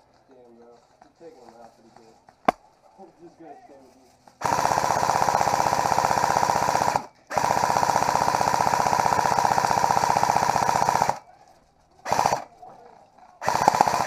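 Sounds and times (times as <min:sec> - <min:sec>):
airsoft rifle automatic bursts: 0:04.4 - 0:11.2, 0:12.0 - 0:12.6, 0:13.4 - 0:14.0.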